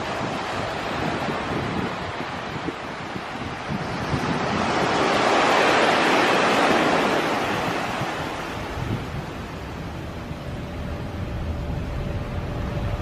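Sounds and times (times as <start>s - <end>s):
rushing roar in the sky: 0.0s - 13.0s.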